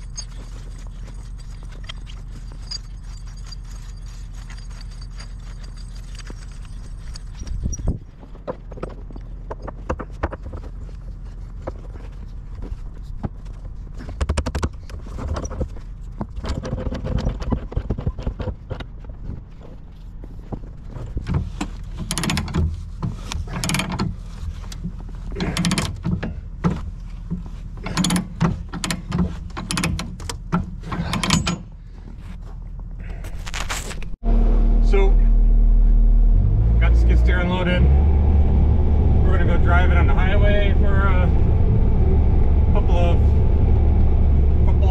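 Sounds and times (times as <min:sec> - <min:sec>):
skid steer engine running: 0:34.2 - 0:44.9.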